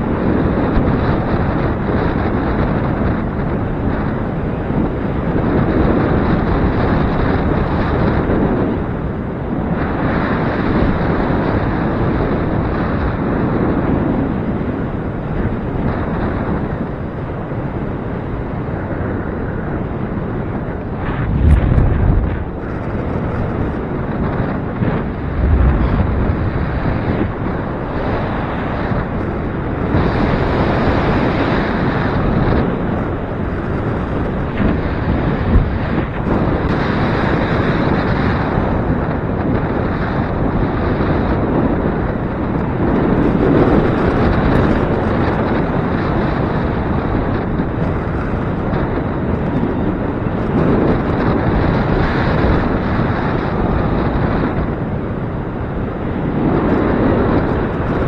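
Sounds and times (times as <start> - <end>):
gusty wind on microphone: 0.0 - 58.0.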